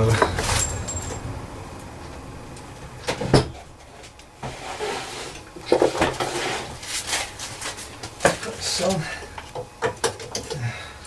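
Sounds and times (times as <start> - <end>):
tools knocking and clattering: 0.0 - 1.3.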